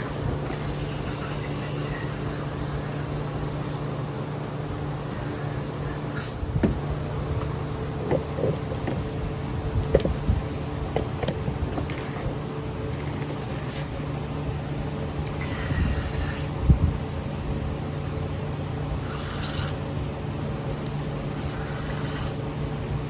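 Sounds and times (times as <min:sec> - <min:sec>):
steady low hum: 0:00.0 - 0:23.0
aerosol spray hissing: 0:00.6 - 0:04.1.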